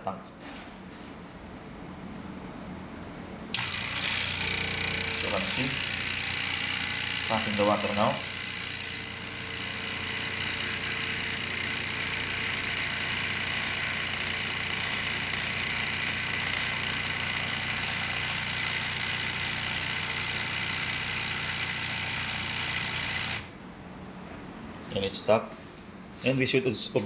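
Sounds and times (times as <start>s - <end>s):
water pump humming and hissing: 3.5s - 23.6s.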